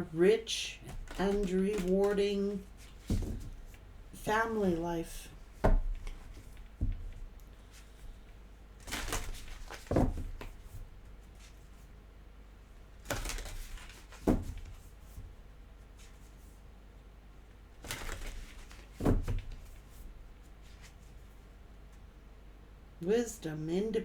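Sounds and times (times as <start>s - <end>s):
cards rustling: 0.7s - 10.6s, 13.0s - 14.8s, 17.8s - 19.9s.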